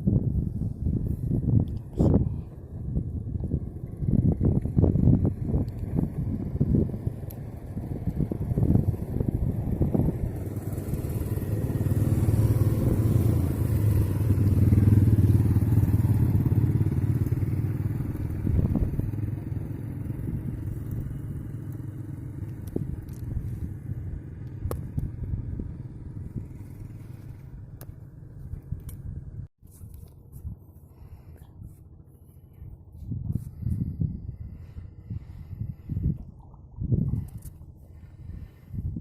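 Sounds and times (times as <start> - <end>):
boat engine rumbling: 0.5 - 29.5.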